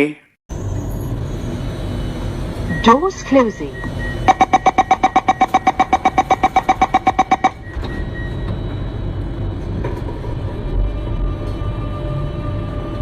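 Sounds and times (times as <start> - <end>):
train rumble: 0.5 - 13.0
train door warning beeps: 2.7 - 9.0.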